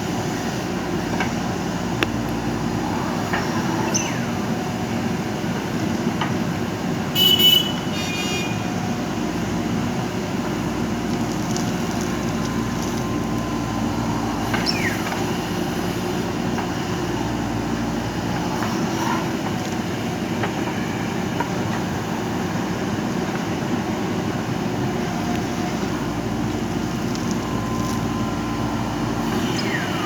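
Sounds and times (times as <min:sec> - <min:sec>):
diesel engine running: 0:00.0 - 0:30.0
high falling squeal: 0:29.1 - 0:30.0.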